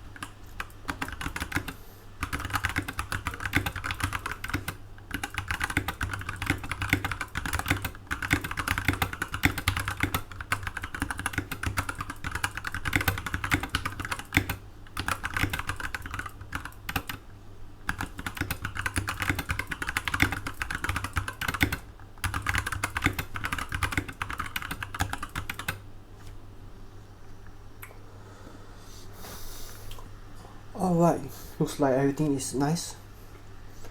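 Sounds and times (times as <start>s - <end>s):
fast typing on mechanical keyboard: 0.0s - 17.2s, 17.9s - 25.8s.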